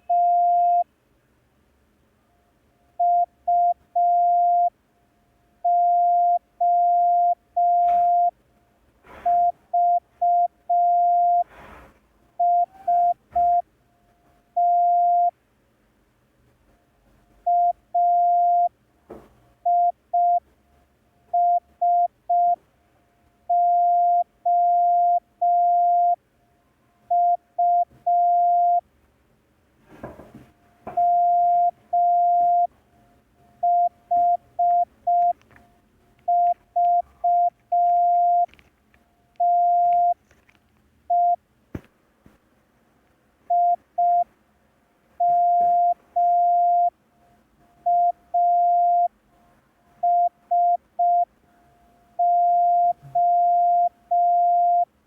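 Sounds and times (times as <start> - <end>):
morse code beeps: 0.0 - 0.8, 5.7 - 8.3, 9.3 - 11.5, 12.4 - 13.6, 14.6 - 15.3, 17.5 - 18.7, 19.7 - 20.4, 21.4 - 22.6, 23.5 - 26.2, 27.1 - 28.8, 30.9 - 32.7, 33.6 - 35.4, 36.3 - 38.5, 39.4 - 40.2, 41.1 - 41.4, 43.5 - 44.3, 45.2 - 46.9, 47.9 - 49.1, 50.0 - 51.3, 52.2 - 54.9.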